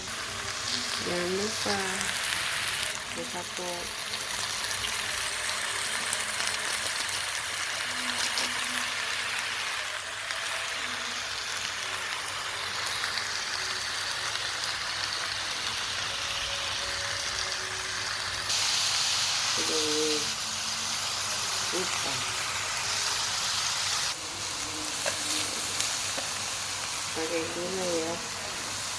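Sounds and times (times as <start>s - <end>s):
vegetables sizzling in a pan: 0.0s - 28.9s.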